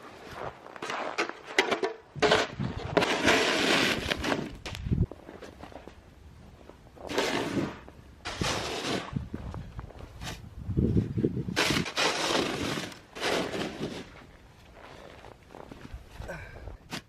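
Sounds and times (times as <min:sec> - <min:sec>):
snow shovel scraping snow: 0:02.2 - 0:04.6, 0:07.0 - 0:09.3, 0:11.5 - 0:15.4.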